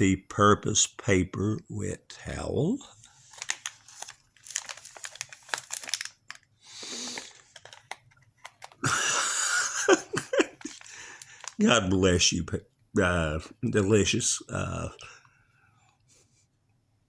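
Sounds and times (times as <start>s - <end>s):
packaging crinkling and rustling: 3.0s - 9.1s, 9.9s - 12.0s.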